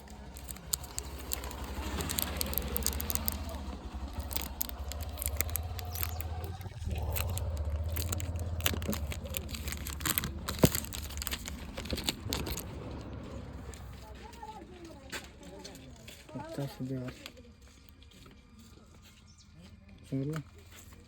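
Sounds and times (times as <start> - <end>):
packaging crinkling: 0.0 - 13.8
steady low hum: 0.0 - 14.2.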